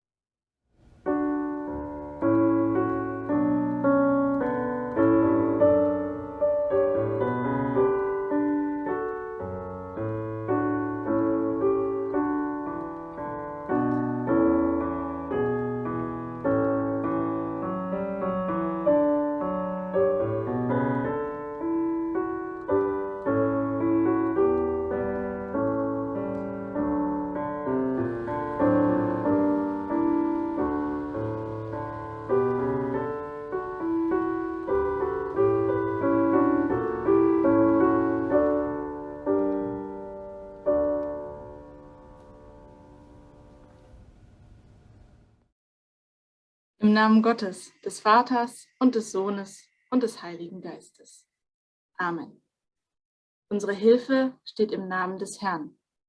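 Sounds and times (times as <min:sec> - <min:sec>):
slow solo piano: 0:00.8 - 0:45.2.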